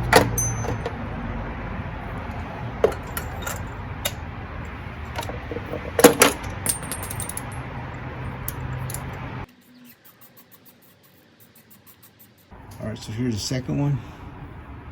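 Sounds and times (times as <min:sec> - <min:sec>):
metal hand tools clinking: 0:00.1 - 0:01.0, 0:02.8 - 0:04.2, 0:05.0 - 0:07.7, 0:08.4 - 0:09.2.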